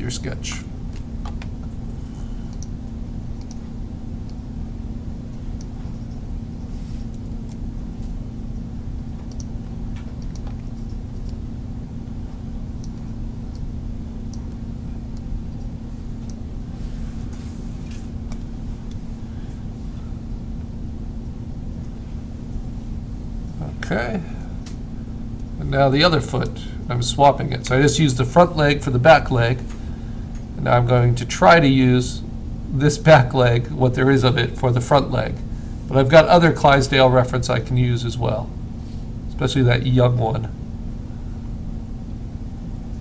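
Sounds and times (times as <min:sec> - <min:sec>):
low electrical hum: 0:00.0 - 0:43.0
faint clicks: 0:02.5 - 0:02.8, 0:08.5 - 0:11.4.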